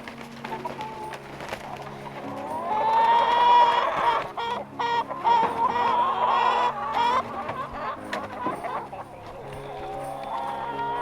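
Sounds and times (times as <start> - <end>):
chicken clucking: 0.2 - 11.0
chicken calling: 2.3 - 11.0.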